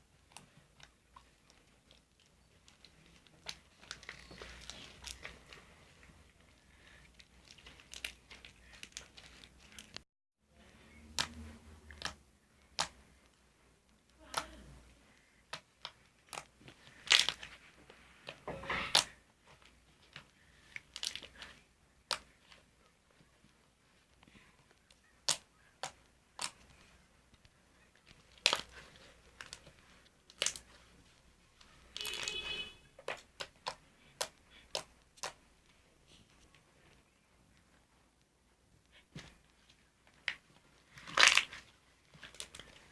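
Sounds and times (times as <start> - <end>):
slime crackling squishes: 0.0 - 10.0, 10.6 - 42.9
slime popping and clicking: 11.1 - 13.0, 33.1 - 35.4.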